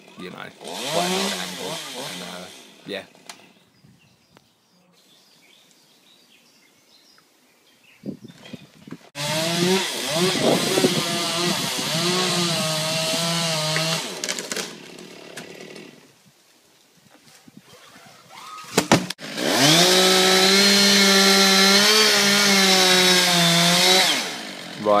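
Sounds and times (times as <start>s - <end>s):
chainsaw cutting through trunk: 0.0s - 3.4s, 9.1s - 16.1s, 18.8s - 25.0s.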